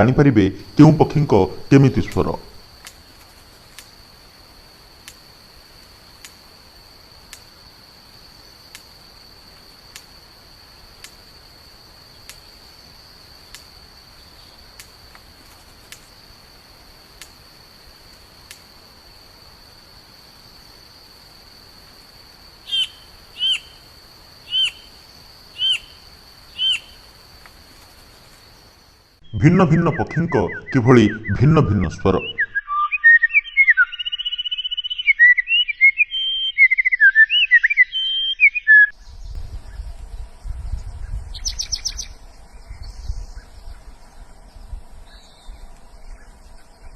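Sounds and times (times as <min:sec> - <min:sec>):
bird calling: 0:22.6 - 0:27.2, 0:29.2 - 0:39.0.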